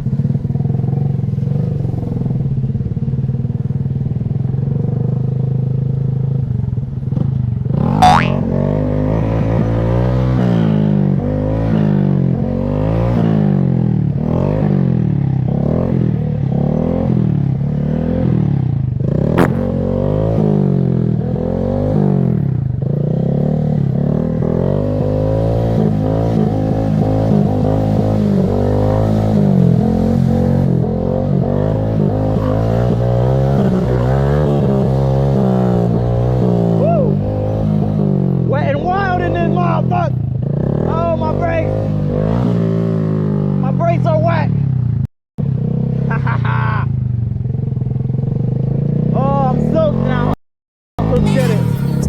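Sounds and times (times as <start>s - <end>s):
motorcycle engine revving: 17.8s - 38.6s, 51.0s - 52.0s.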